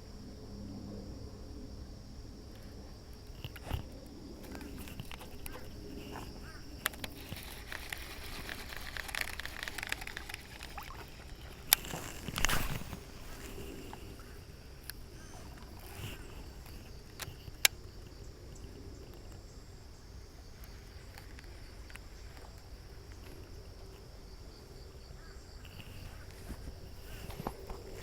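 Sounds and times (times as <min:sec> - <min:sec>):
faint high-pitched hum: 0:00.0 - 0:28.0
sharp clicks: 0:03.4 - 0:14.0.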